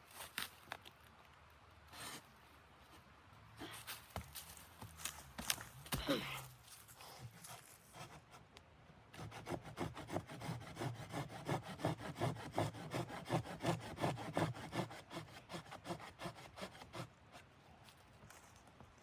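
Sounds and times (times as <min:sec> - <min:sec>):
fast rasping strokes: 0:09.2 - 0:17.5.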